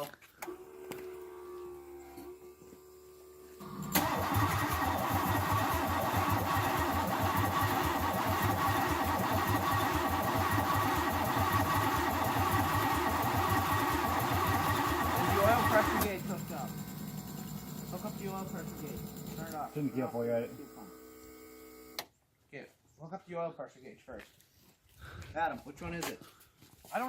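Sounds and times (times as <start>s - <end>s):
engine cranking on starter: 3.6s - 22.1s.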